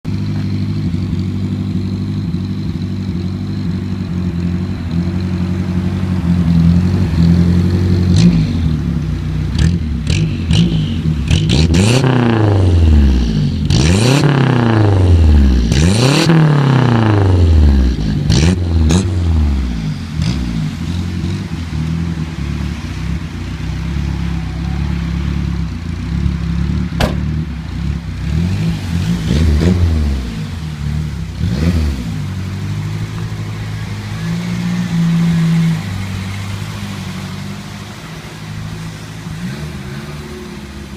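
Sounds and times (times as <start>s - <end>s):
car engine idling: 0.0s - 11.6s, 16.5s - 40.9s
engine revving: 0.1s - 40.9s
exhaust cracks: 25.0s - 33.4s.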